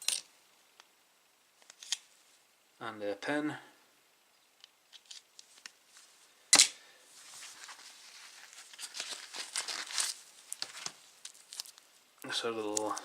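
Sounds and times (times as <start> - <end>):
soft rustling and scraping: 4.9 - 6.4, 7.1 - 12.0.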